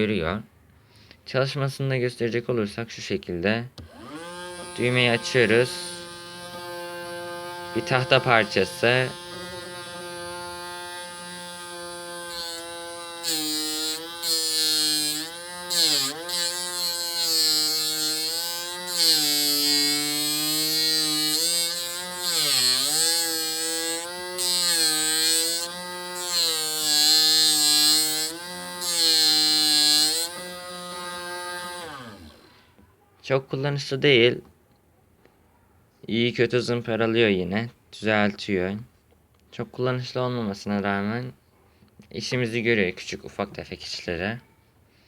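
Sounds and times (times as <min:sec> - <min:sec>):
small motor whining: 0:03.8 - 0:32.6
sandpaper scraping wood: 0:04.4 - 0:32.4.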